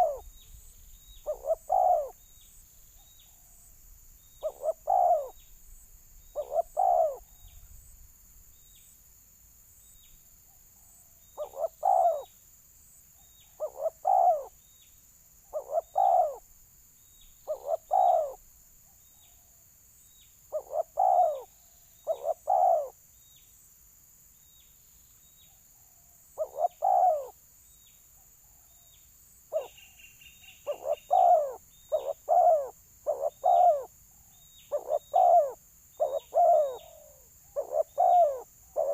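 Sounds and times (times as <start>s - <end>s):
doves cooing: 0.0s - 0.3s, 1.2s - 2.2s, 4.4s - 5.4s, 6.3s - 7.3s, 11.4s - 12.3s, 13.6s - 14.6s, 15.5s - 16.4s, 17.4s - 18.4s, 20.5s - 23.0s, 26.4s - 27.4s, 29.5s - 29.8s, 30.6s - 33.9s, 34.7s - 38.9s.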